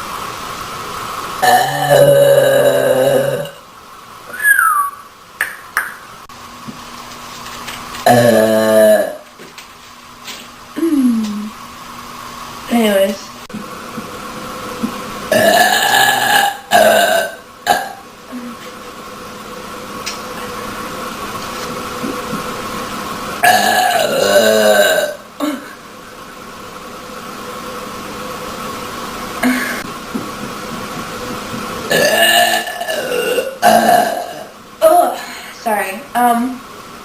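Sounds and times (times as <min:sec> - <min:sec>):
woman burping loudly: 0:01.4 - 0:03.6, 0:08.0 - 0:09.2, 0:15.3 - 0:18.4, 0:23.4 - 0:25.8, 0:31.9 - 0:34.5.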